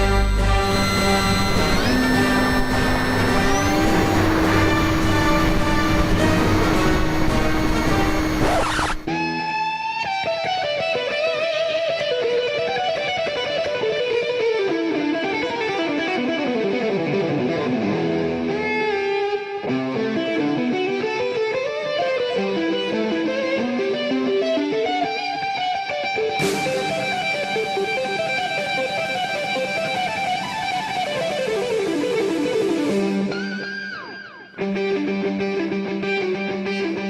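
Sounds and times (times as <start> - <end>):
background music with fast runs: 0.0 - 9.1.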